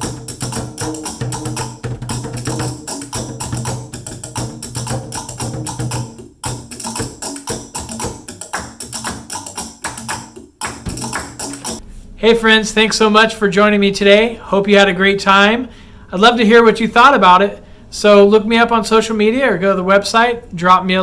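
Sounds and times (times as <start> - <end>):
sticks striking plastic containers: 0.0 - 11.8.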